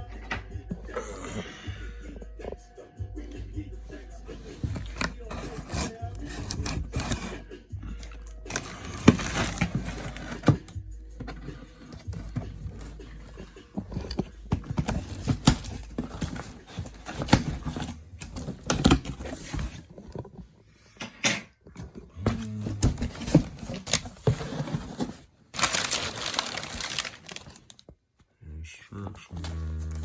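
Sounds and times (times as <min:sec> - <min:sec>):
packaging rustling and scraping: 0:04.2 - 0:20.6, 0:21.7 - 0:28.0
cardboard box being cut: 0:04.3 - 0:07.4, 0:08.5 - 0:19.8, 0:22.2 - 0:27.5.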